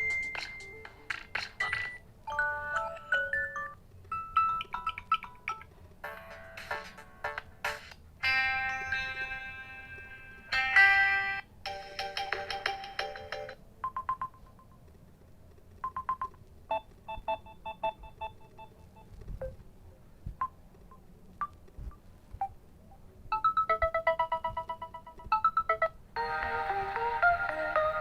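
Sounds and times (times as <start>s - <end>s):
ringtone melody: 0.0s - 14.7s, 23.3s - 28.0s.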